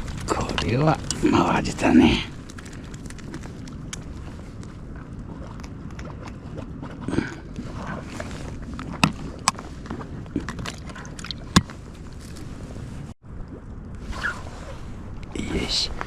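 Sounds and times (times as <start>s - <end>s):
lapping water: 0.0s - 11.7s
wind: 0.0s - 16.0s.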